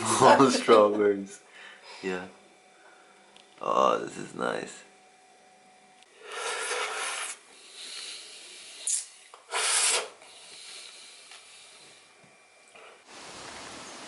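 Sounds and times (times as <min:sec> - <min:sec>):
rasping rubbing noise: 0:06.4 - 0:07.4.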